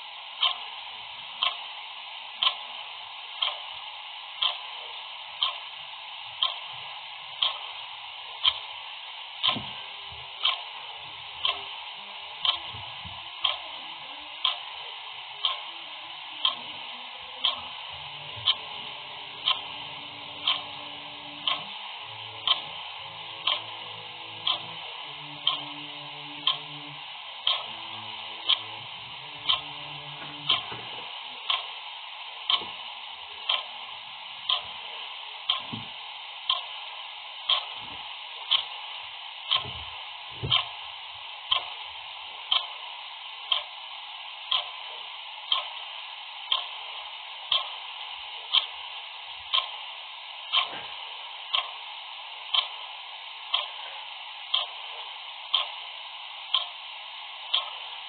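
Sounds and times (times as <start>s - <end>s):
background hiss: 0.0s - 58.0s
clock ticking: 0.4s - 0.7s, 1.4s - 1.7s, 2.4s - 2.8s, 3.4s - 3.8s, 4.4s - 5.7s, 6.3s - 6.8s, 7.4s - 7.8s, 8.4s - 8.7s, 9.4s - 13.8s, 14.4s - 14.8s, 15.4s - 31.8s, 32.5s - 34.9s, 35.5s - 36.8s, 37.5s - 37.8s, 38.5s - 38.8s, 39.5s - 40.8s, 41.5s - 41.8s, 42.5s - 42.9s, 43.5s - 43.8s, 44.5s - 45.9s, 46.5s - 47.9s, 48.5s - 48.9s, 49.5s - 49.8s, 50.5s - 50.9s, 51.5s - 51.8s, 52.5s - 52.9s, 53.5s - 53.9s, 54.5s - 58.0s.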